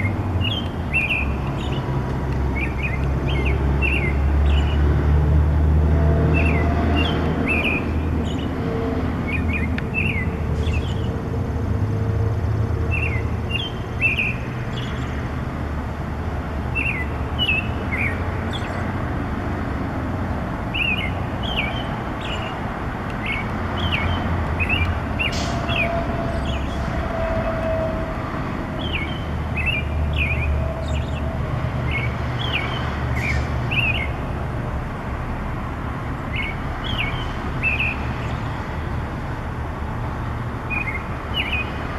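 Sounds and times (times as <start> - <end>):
songbird chirping: 16.7 - 18.9, 40.7 - 41.8.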